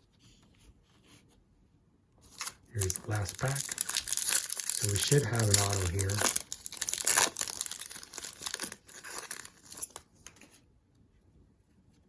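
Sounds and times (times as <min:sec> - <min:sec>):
foil wrapper tearing and crinkling: 0:02.3 - 0:10.4.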